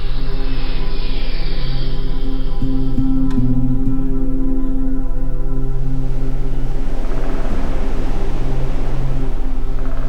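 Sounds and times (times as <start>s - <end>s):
low humming tones: 0.0s - 10.0s
rumbling hissing noise: 5.6s - 10.0s.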